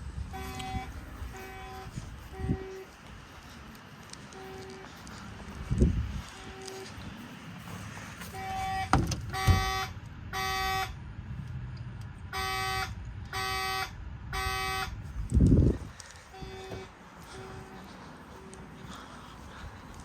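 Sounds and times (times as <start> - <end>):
fire alarm horn blasts: 0.3 - 3.0, 4.3 - 5.0, 6.2 - 7.0, 8.3 - 11.0, 12.3 - 15.1, 16.3 - 18.7.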